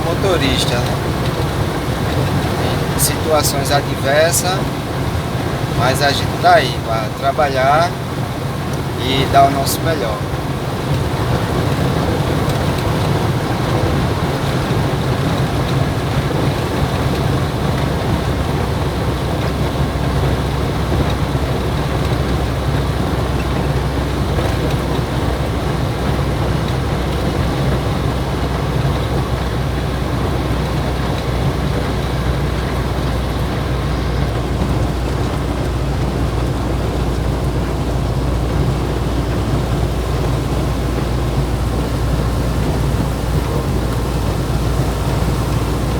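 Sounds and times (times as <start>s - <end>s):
rain hiss: 0.0s - 45.9s
truck engine drone: 0.0s - 45.9s
wet road noise: 0.0s - 45.9s.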